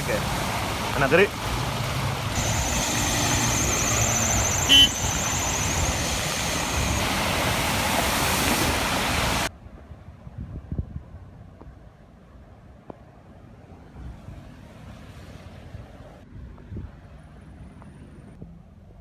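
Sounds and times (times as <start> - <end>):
vehicles rushing through water: 0.0 - 9.5, 13.4 - 16.2
car horn toot: 2.4 - 7.0
high whine: 2.4 - 9.5.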